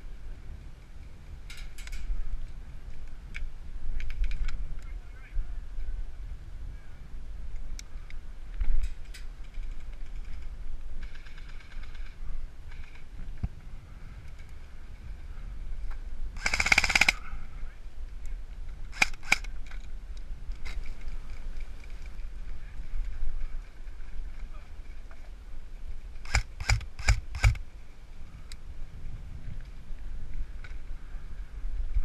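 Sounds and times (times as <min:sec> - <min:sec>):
airsoft gun shots: 0:16.4 - 0:17.2, 0:26.3 - 0:27.6.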